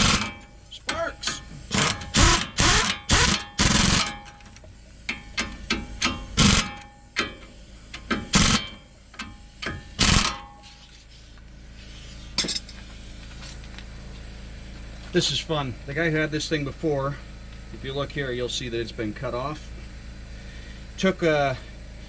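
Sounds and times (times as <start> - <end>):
sharp metallic bangs: 0.0 - 4.4, 5.1 - 7.4.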